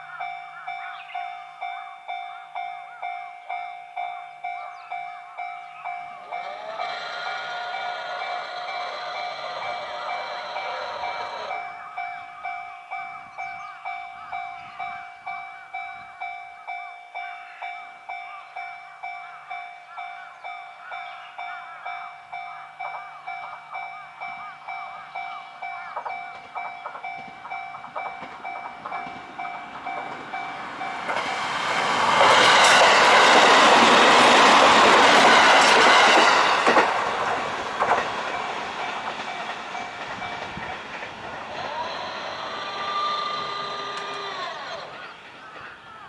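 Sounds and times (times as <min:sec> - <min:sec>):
level crossing warning bell: 0:00.0 - 0:46.0
whining tone: 0:06.2 - 0:11.8, 0:37.9 - 0:45.7
train wheels clattering over rails: 0:06.2 - 0:12.2, 0:25.1 - 0:46.0.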